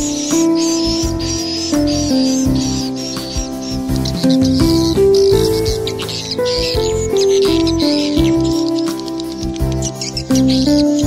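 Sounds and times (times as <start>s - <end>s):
high short bird chirps: 0.0s - 11.0s
slow melody of held notes: 0.0s - 11.0s.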